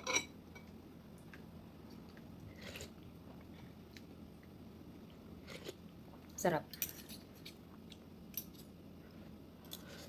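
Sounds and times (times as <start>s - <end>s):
person chewing food: 1.2s - 6.3s.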